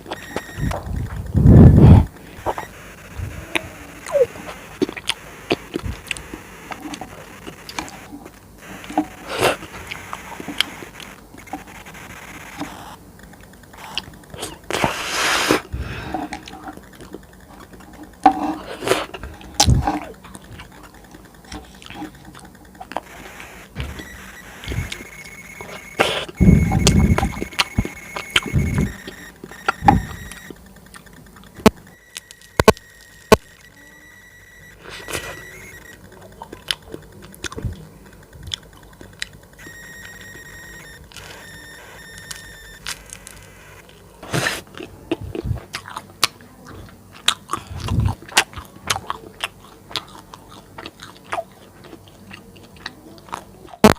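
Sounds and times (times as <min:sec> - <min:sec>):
wet mouth clicks and chewing: 0:03.5 - 0:11.6, 0:12.6 - 0:23.2, 0:36.0 - 0:39.6, 0:43.9 - 0:53.9.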